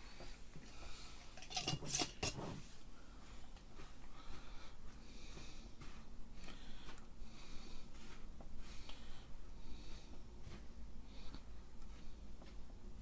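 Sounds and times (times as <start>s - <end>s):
utensil clinks: 1.4s - 2.4s.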